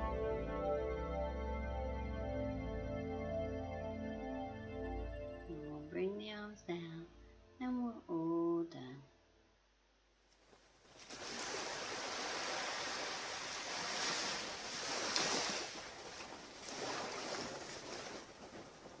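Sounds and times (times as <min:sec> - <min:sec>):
ocean surf washing onto beach: 0:11.0 - 0:19.0.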